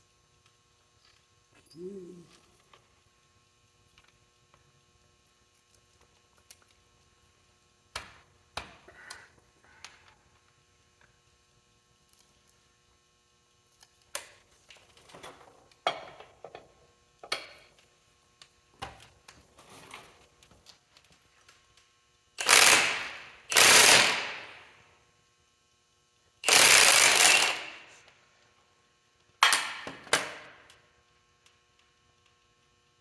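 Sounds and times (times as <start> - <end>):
faint steady hum: 0.0 - 22.4.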